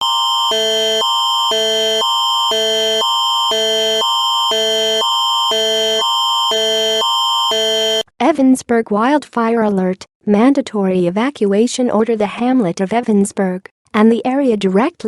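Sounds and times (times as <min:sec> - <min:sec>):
constant high-pitched tone: 0:00.0 - 0:08.0
electronic alert tone alternating chords: 0:00.0 - 0:08.0.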